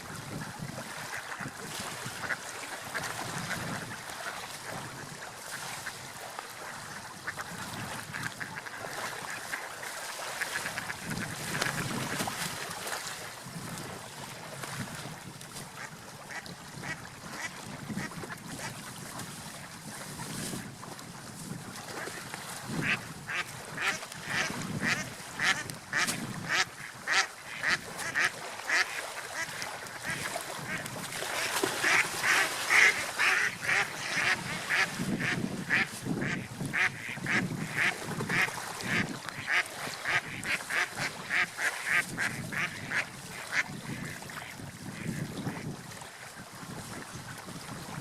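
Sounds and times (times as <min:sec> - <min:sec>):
ducks quacking: 0:00.1 - 0:06.0, 0:06.9 - 0:09.7, 0:15.8 - 0:18.7, 0:22.8 - 0:45.6.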